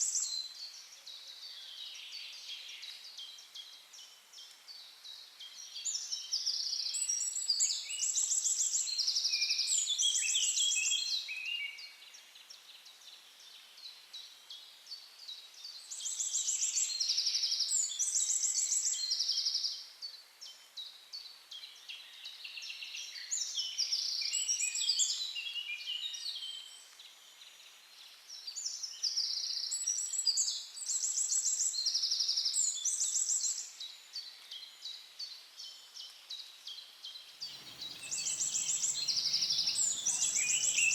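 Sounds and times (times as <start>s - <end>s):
songbird trilling and chirping: 37.4s - 40.9s.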